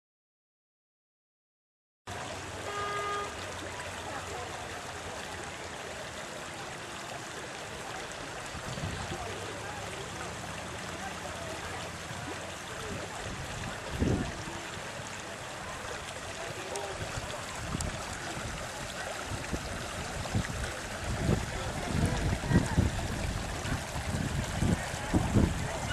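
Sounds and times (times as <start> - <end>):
floodwater rushing: 2.1 - 25.9
short horn-like tone: 2.6 - 3.4.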